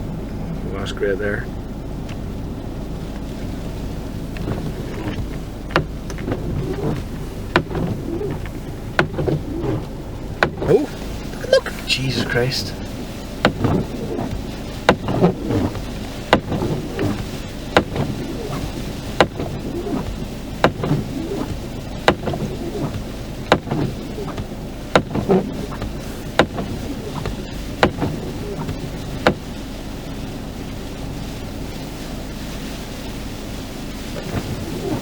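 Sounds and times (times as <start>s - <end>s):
blizzard wind: 0.0s - 35.0s
low hum of stationary van: 0.0s - 35.0s
windscreen wipers sweeping: 0.0s - 35.0s
sharp knocks: 4.4s - 10.7s.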